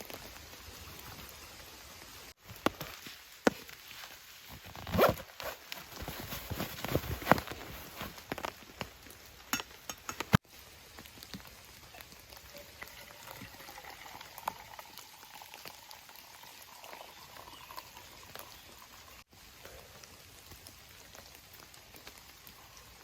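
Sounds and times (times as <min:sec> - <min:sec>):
water boiling in a pot: 0:07.2 - 0:23.0.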